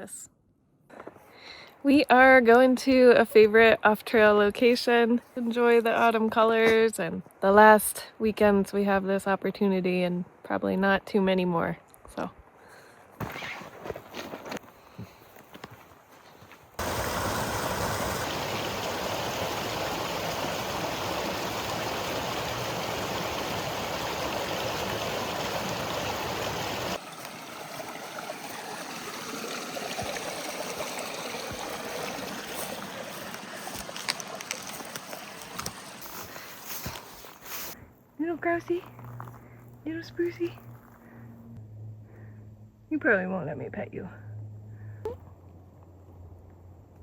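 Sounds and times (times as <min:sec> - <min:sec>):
stream water rushing: 0:16.8 - 0:37.1.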